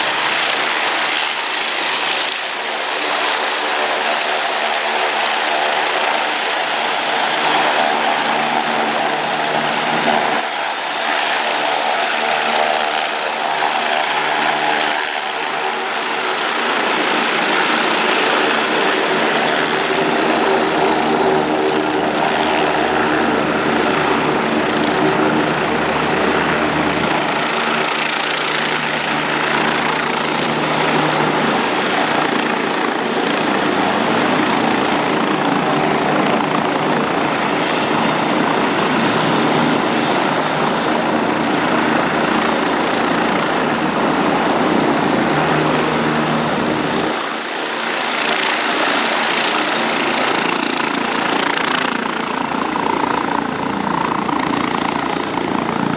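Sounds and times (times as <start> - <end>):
helicopter turbine and rotor: 0.0 - 55.9.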